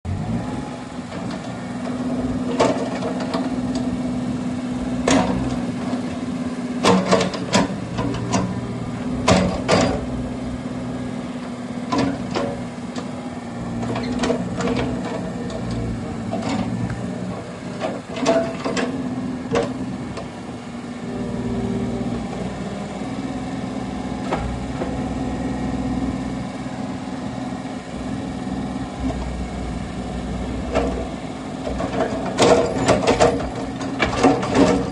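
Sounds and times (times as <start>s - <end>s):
mini excavator diesel engine: 0.0s - 34.9s
sharp knocks and clanks: 30.7s - 34.9s.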